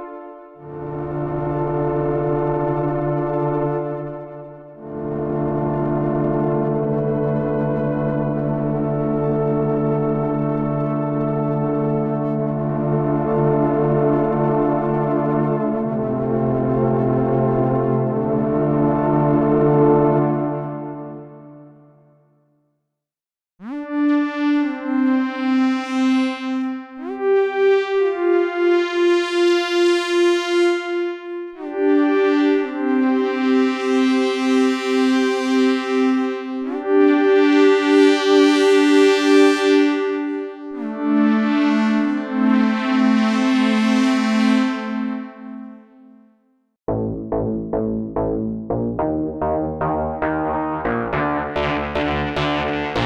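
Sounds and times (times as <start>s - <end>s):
synthesizer sliding held notes: 46.9s - 53.0s.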